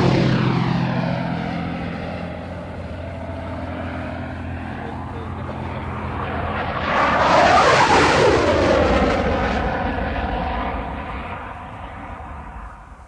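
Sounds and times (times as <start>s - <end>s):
aircraft flying past: 0.0s - 13.0s.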